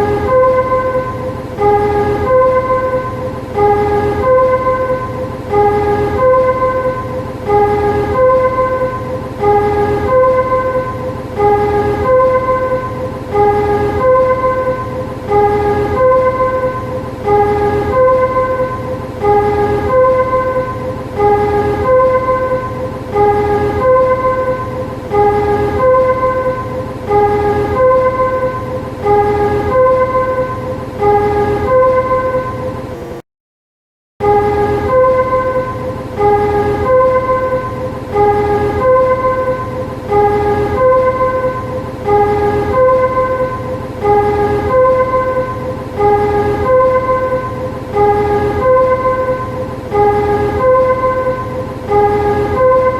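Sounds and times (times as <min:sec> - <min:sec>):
electronic warning chime: 0:00.0 - 0:33.2.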